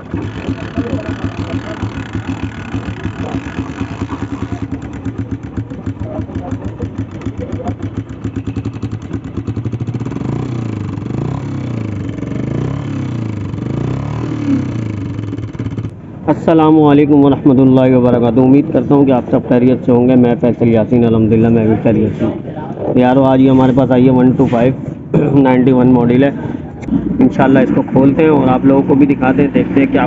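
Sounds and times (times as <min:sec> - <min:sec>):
motorcycle engine idling: 0:00.0 - 0:16.2.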